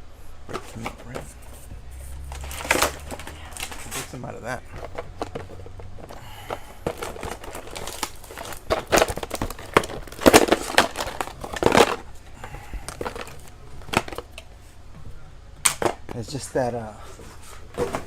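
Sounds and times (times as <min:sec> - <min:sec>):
plastic packaging crinkling: 0:02.1 - 0:14.5.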